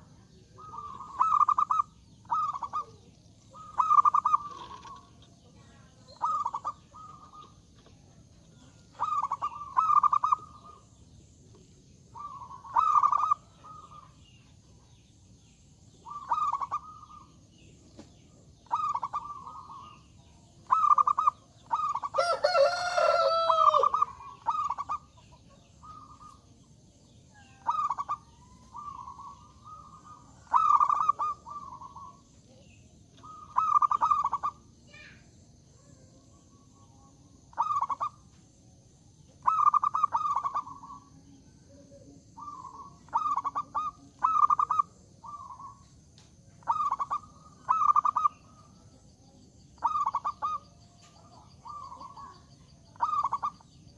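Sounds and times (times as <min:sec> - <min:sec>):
dove cooing: 0:00.0 - 0:10.9, 0:12.1 - 0:14.3, 0:16.0 - 0:17.7, 0:18.5 - 0:26.7, 0:27.4 - 0:34.7, 0:37.4 - 0:38.2, 0:39.4 - 0:45.9, 0:46.6 - 0:49.0, 0:49.8 - 0:53.8
rooster crowing: 0:22.1 - 0:24.2.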